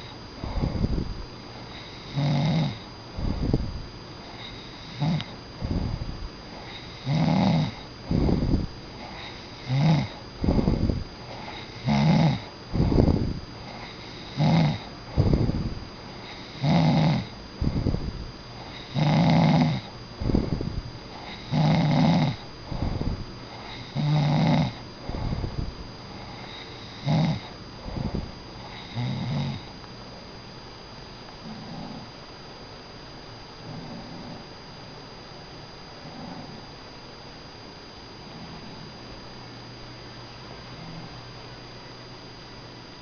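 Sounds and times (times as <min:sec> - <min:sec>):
animal snoring: 0:00.0 - 0:01.0, 0:01.7 - 0:29.8, 0:31.4 - 0:32.2, 0:33.6 - 0:34.6, 0:35.9 - 0:36.7, 0:38.3 - 0:38.8, 0:40.7 - 0:41.2
soft breath: 0:00.0 - 0:02.2, 0:02.8 - 0:07.1, 0:07.7 - 0:16.7, 0:17.3 - 0:19.0, 0:19.8 - 0:21.6, 0:22.3 - 0:24.0, 0:24.7 - 0:29.0.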